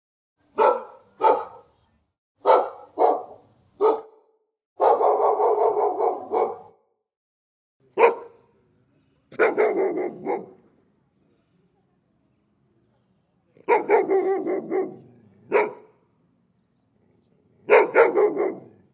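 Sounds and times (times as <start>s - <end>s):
dog barking: 0.6s - 1.7s, 2.4s - 6.8s, 8.0s - 8.4s, 9.3s - 10.6s, 13.6s - 16.0s, 17.6s - 18.9s.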